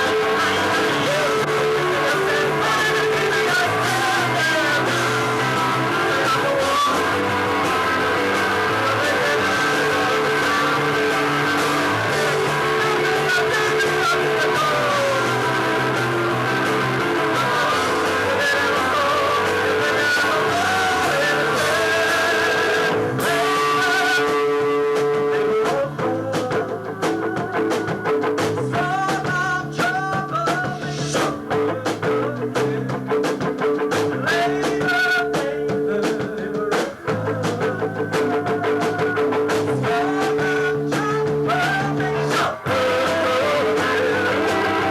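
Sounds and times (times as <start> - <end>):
person singing: 0.0 - 44.9
rock band playing: 0.0 - 44.9.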